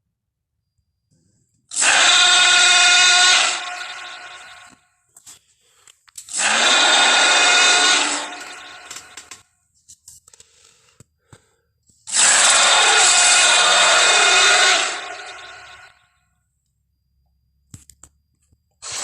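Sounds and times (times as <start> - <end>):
dinosaur roaring: 1.7 - 4.7, 6.3 - 9.2, 12.1 - 15.9.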